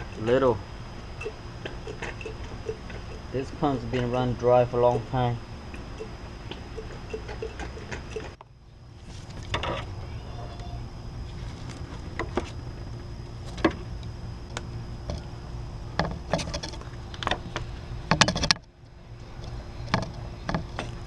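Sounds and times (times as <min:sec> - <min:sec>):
steady background hum: 0:00.0 - 0:21.0
hand tools clicking and clinking: 0:01.2 - 0:08.4.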